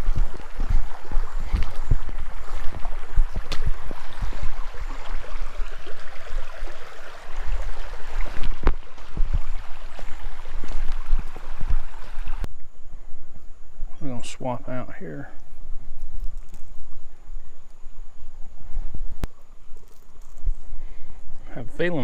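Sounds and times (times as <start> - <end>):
creek water running: 0.0 - 12.5.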